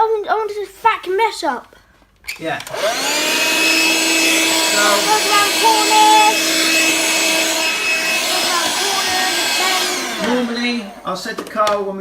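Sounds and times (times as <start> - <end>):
handheld vacuum motor whine: 2.6 - 11.2.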